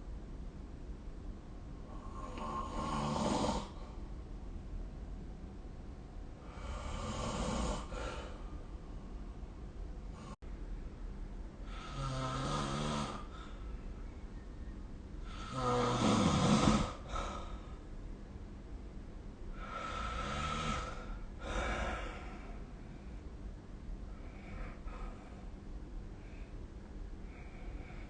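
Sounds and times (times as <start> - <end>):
person snoring: 1.9 - 3.8, 6.4 - 8.4, 11.6 - 13.5, 15.2 - 17.6, 19.5 - 22.3.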